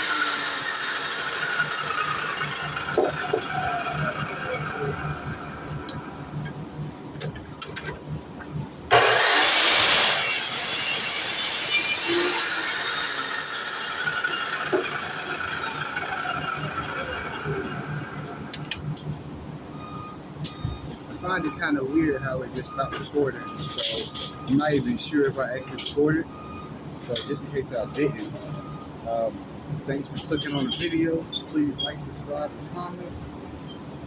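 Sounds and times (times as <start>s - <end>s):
saw blade cutting: 0.0s - 6.0s, 8.9s - 18.7s
miter saw motor whine: 0.0s - 6.5s, 8.9s - 19.0s, 19.7s - 24.7s.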